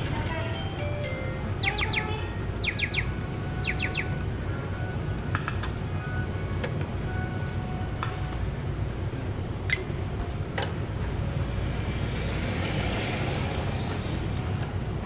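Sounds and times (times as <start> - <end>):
soft whir of small train: 0.0 - 15.0
steady low rumble: 9.9 - 15.0.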